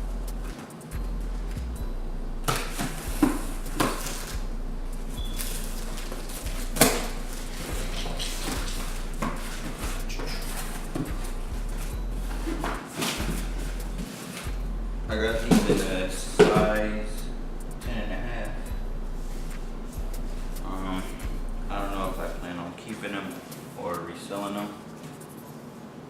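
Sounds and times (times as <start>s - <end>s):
low steady hum: 0.0s - 24.9s
cardboard box handling noise: 12.2s - 14.5s.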